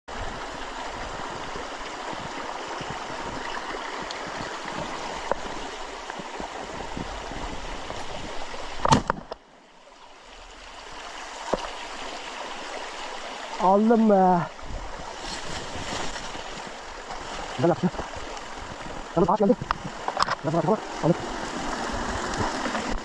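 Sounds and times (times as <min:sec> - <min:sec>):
mountain stream running: 0:00.1 - 0:23.0.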